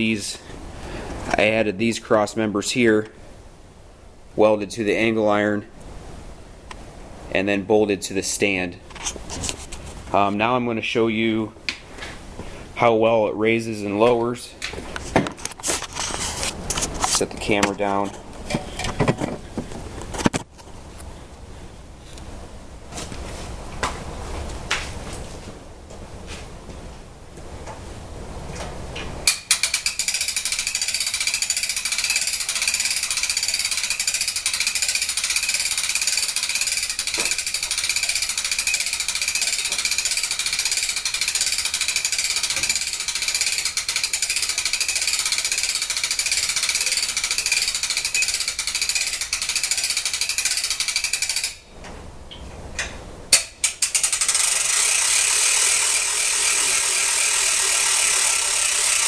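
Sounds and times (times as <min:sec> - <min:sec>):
winch ratcheting: 0:29.2 - 0:51.6, 0:53.3 - 0:59.0.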